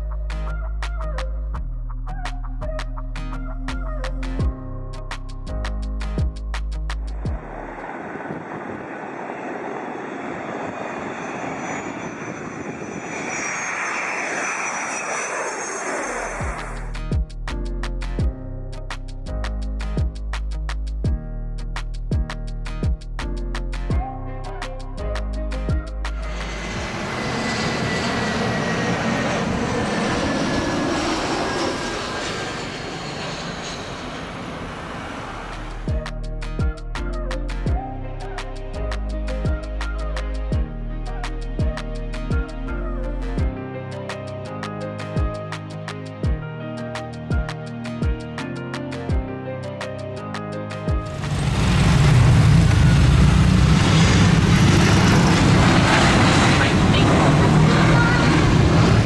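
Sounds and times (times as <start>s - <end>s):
airplane engine rush: 7.1s - 17.0s, 26.1s - 36.0s, 51.0s - 59.0s
thin high whine: 7.4s - 17.0s, 26.2s - 35.8s.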